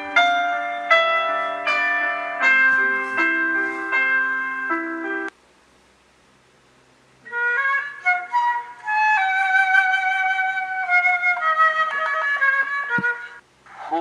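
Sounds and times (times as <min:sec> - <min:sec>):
flute melody: 0:07.2 - 0:14.0.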